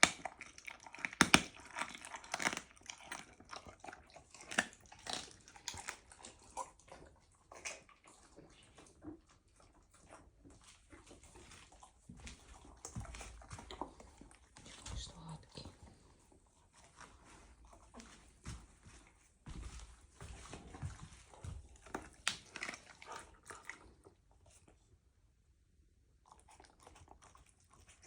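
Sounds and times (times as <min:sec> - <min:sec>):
puma crunching raw chicken: 0:00.0 - 0:25.0, 0:26.2 - 0:28.0.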